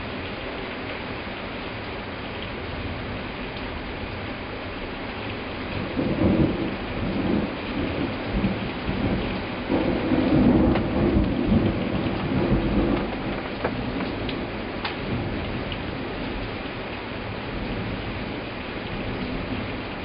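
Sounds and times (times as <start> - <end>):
heavy rain: 0.0 - 20.0
thunder rumbling: 5.8 - 16.4.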